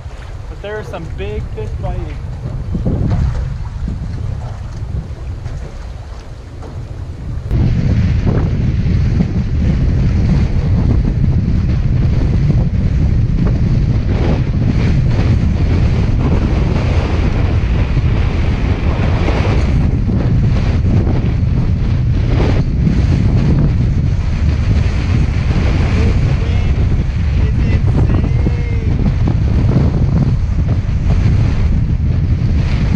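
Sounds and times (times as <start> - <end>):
strong wind buffeting microphone: 0.0 - 32.9.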